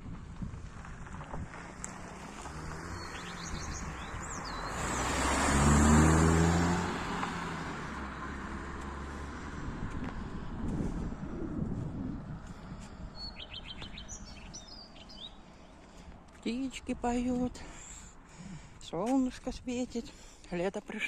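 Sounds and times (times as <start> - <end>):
car driving past: 0.8 - 15.4
bird chirping: 2.8 - 5.2, 13.1 - 15.8.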